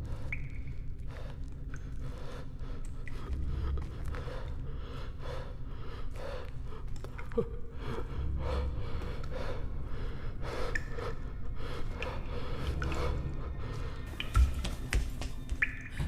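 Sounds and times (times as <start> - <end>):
steady low rumble: 0.0 - 14.8
person breathing hard: 1.0 - 7.0, 7.6 - 14.2.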